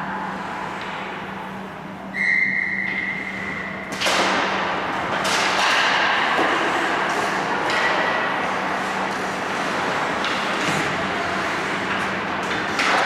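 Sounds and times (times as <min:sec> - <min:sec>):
rush of rink and players noise: 0:00.0 - 0:13.0
referee's whistle: 0:02.1 - 0:03.7.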